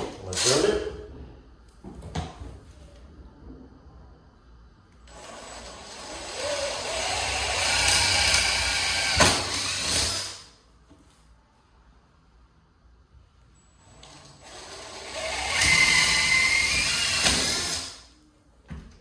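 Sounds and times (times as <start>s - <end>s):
power drill boring into wood: 5.1s - 10.4s, 14.4s - 18.0s.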